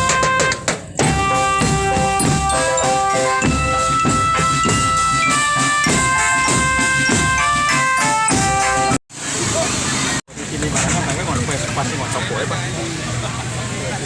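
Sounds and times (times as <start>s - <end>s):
bright tune in held notes: 0.0s - 9.0s
drums keeping steady beat: 0.0s - 9.0s.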